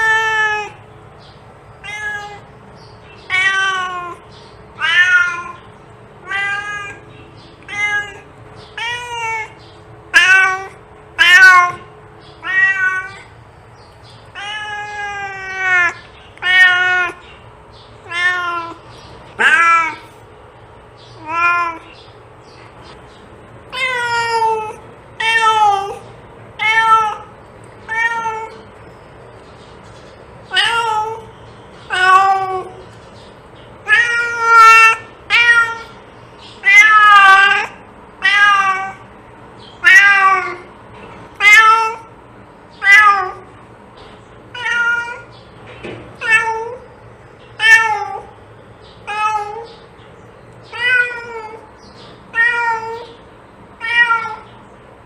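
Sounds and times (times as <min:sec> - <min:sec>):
cat meowing: 0:00.0 - 0:00.8, 0:01.8 - 0:02.5, 0:03.2 - 0:04.2, 0:04.8 - 0:13.3, 0:14.3 - 0:17.2, 0:18.0 - 0:20.1, 0:21.2 - 0:22.0, 0:23.7 - 0:28.7, 0:30.5 - 0:31.3, 0:31.9 - 0:32.8, 0:33.8 - 0:36.0, 0:36.6 - 0:39.1, 0:39.8 - 0:40.7, 0:41.3 - 0:42.1, 0:42.8 - 0:43.6, 0:44.5 - 0:45.3, 0:46.2 - 0:46.9, 0:47.6 - 0:48.3, 0:49.0 - 0:49.8, 0:50.7 - 0:51.7, 0:52.3 - 0:53.2, 0:53.8 - 0:54.6.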